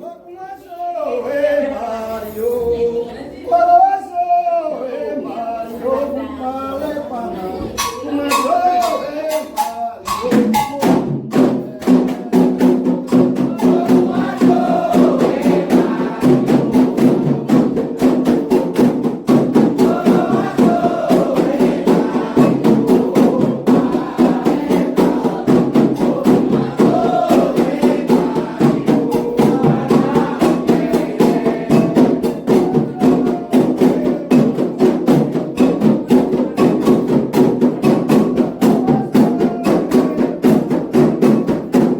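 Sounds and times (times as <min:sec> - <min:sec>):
singing: 0:00.0 - 0:41.9
hand drums: 0:07.6 - 0:41.9.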